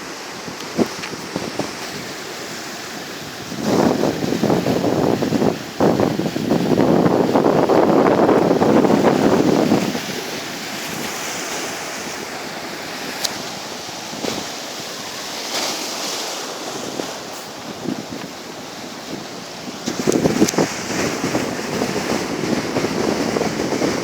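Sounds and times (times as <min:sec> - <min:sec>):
sea waves washing on shore: 0:00.0 - 0:24.0
wind rushing over microphone: 0:00.0 - 0:24.0.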